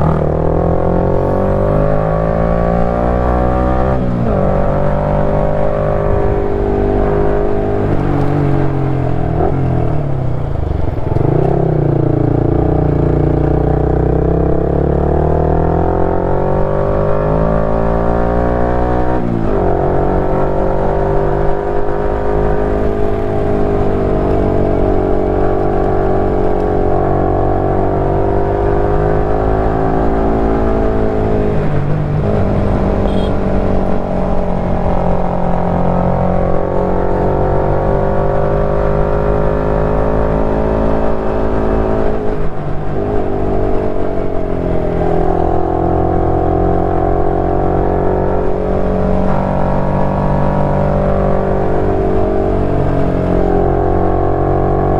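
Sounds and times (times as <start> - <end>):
motorcycle engine running: 6.0 - 14.9, 21.2 - 27.9, 28.8 - 35.2.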